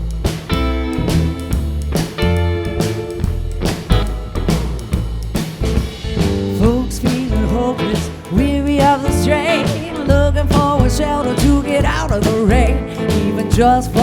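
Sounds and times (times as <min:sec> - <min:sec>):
live country blues rock band: 0:00.0 - 0:14.0
sliding lead melody line: 0:00.5 - 0:14.0.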